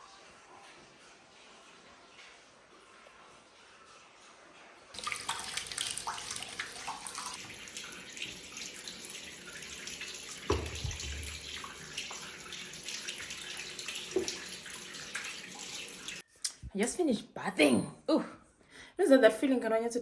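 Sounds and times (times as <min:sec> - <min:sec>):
shower water running: 0:00.0 - 0:16.2
dull thump: 0:10.5 - 0:11.4.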